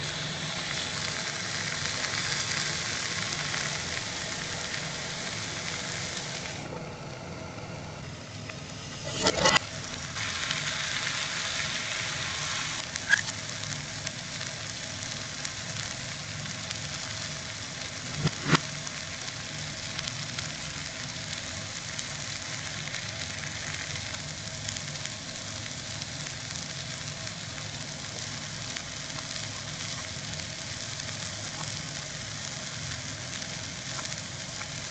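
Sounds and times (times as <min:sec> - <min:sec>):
vegetables sizzling in a pan: 0:00.0 - 0:34.9.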